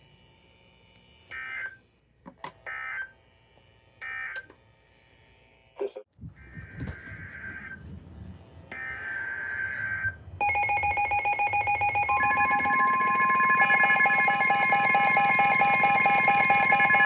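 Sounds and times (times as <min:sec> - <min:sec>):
rapidly pulsing electronic alarm: 0:08.7 - 0:17.0
steady high tone: 0:09.1 - 0:17.0
screeching digital data bursts: 0:10.6 - 0:17.0.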